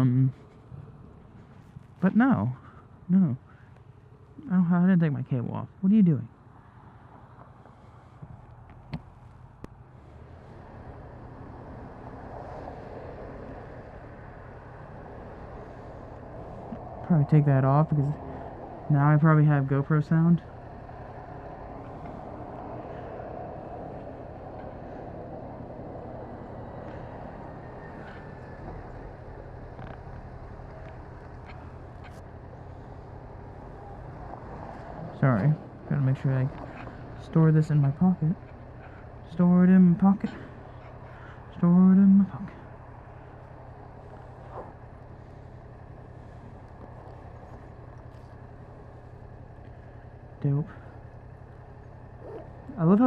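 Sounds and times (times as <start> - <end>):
motorcycle engine idling: 13.2 - 37.2, 37.8 - 39.3, 39.9 - 53.0.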